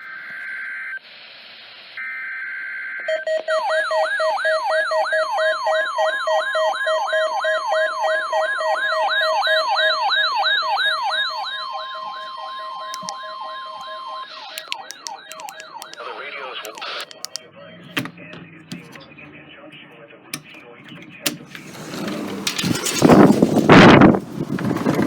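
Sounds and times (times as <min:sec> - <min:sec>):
steady warning alarm tone: 0:03.6 - 0:16.0.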